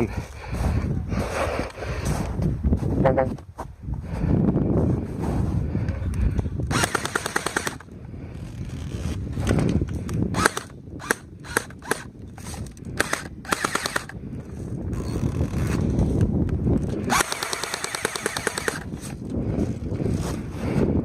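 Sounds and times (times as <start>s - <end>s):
airsoft gun firing: 6.7s - 7.8s, 13.0s - 14.1s, 17.1s - 18.8s.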